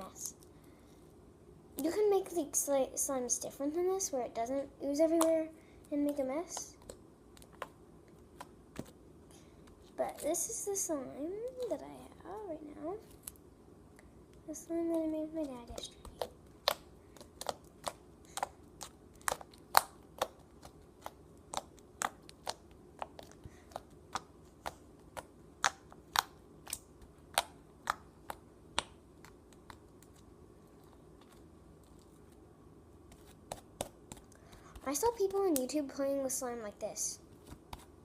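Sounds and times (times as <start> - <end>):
slime clicking and popping: 15.7 - 30.2.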